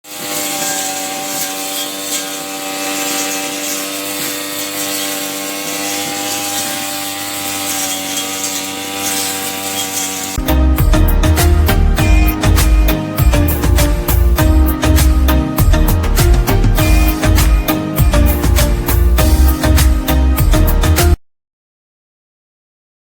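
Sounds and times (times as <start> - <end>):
small motor tool running: 0.0 - 20.6
rasping grinding noise: 0.0 - 21.2.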